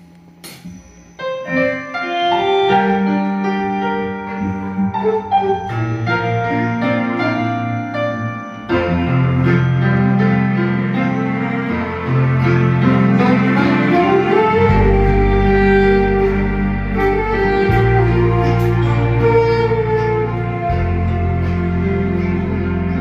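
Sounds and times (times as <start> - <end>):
small band playing slow ballad: 1.4 - 23.0
deep bass line: 2.7 - 23.0.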